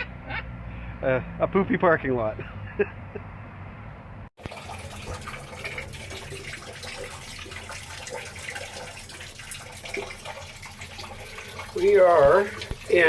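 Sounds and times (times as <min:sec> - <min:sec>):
water running and splashing: 0:04.4 - 0:13.0.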